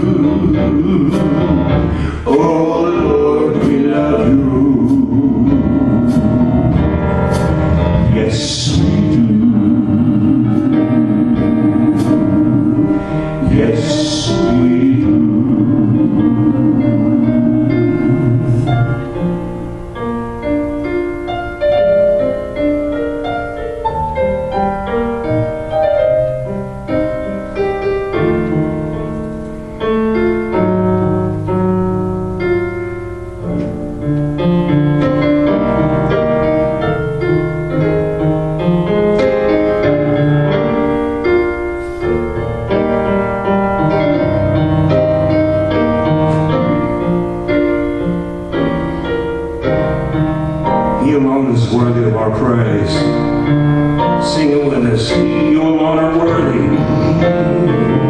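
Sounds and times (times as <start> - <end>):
slow piano chords: 0.0 - 58.0.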